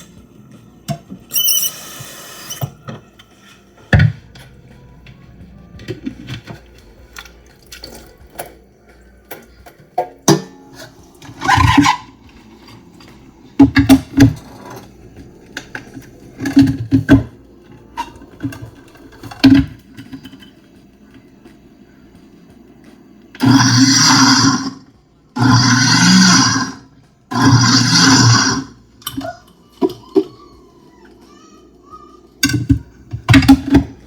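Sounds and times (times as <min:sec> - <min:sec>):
pots and utensils clinking: 0:05.8 - 0:20.9.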